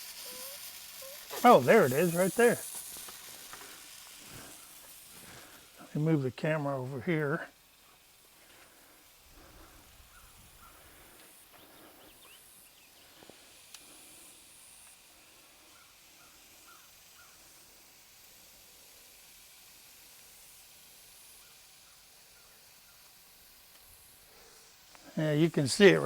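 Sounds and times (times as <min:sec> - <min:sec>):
air hissing from tire puncture: 0:00.0 - 0:26.0.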